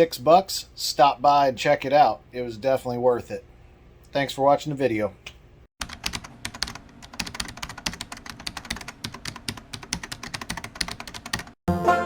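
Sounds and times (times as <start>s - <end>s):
rapid keyboard typing: 5.8s - 11.6s.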